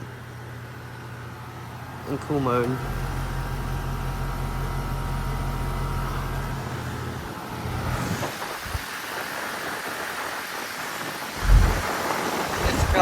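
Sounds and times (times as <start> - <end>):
compressor low hum: 0.0 - 8.9, 11.4 - 13.0
condenser fan air rush: 5.8 - 13.0.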